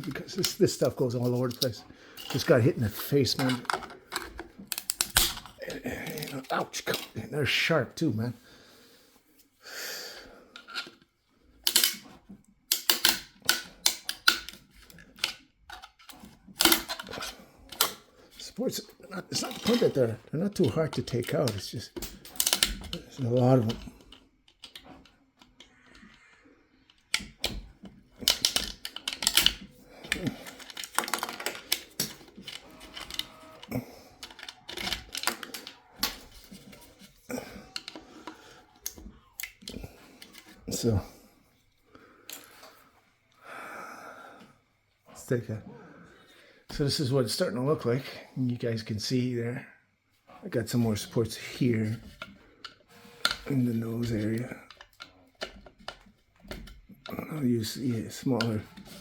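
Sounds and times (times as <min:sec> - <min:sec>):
plastic support pieces snapping: 0:03.4 - 0:07.1, 0:12.7 - 0:18.1, 0:26.9 - 0:36.8.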